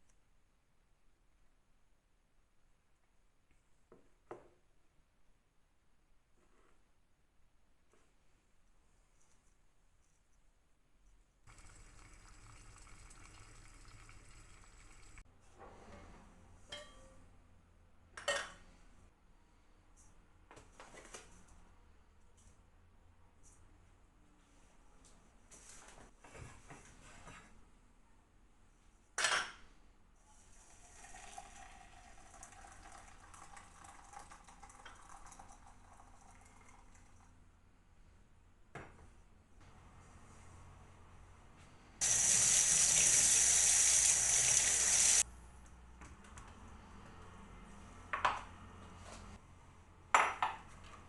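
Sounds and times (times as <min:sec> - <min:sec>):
running water: 0:11.5 - 0:15.2, 0:42.0 - 0:45.2
dishes clinking: 0:16.7 - 0:17.2, 0:18.2 - 0:18.6.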